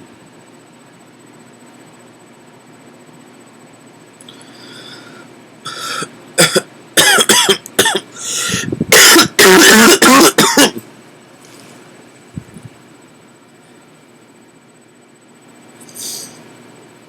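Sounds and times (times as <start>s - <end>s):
quick breaths: 4.3s - 6.1s, 8.1s - 8.8s
person hiccuping: 5.7s - 10.8s.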